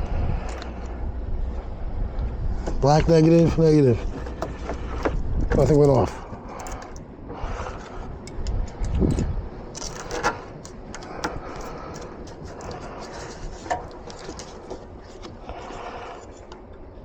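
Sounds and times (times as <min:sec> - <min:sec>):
hand tools scraping: 0:02.8 - 0:08.8, 0:09.8 - 0:16.7
metallic clicks of hand tools: 0:04.3 - 0:07.0.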